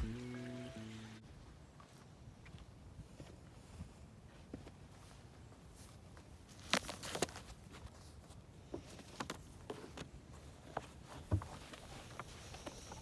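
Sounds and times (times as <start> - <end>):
dull low thump: 0.0 - 0.3.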